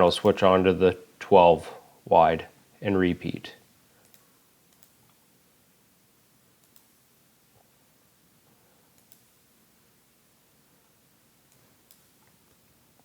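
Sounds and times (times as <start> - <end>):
computer mouse clicks: 4.0 - 5.2, 6.6 - 7.0, 8.9 - 9.4, 11.5 - 12.6.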